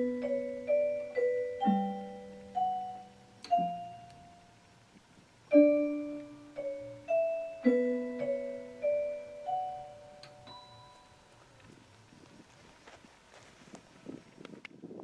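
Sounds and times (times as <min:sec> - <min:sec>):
bell-like mallet notes: 0:00.0 - 0:04.5, 0:05.5 - 0:11.3.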